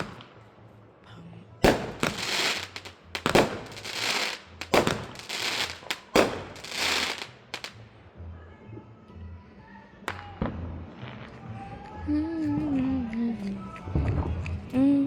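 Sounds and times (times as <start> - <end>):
fireworks bangs: 0.0 - 0.3, 1.6 - 7.8
fireworks crackling hiss: 0.0 - 0.3, 1.7 - 7.8
small fireworks pops: 0.0 - 0.4, 1.7 - 7.8, 10.1 - 12.9.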